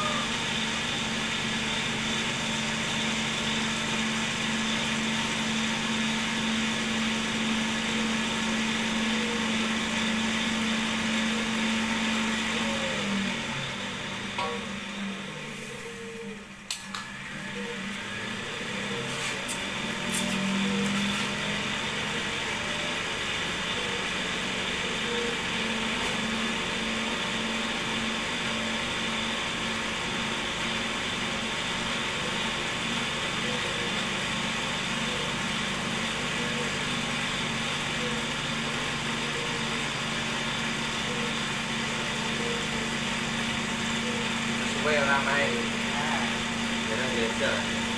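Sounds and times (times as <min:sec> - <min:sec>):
cotton candy machine motor spinning: 0:00.0 - 0:47.9.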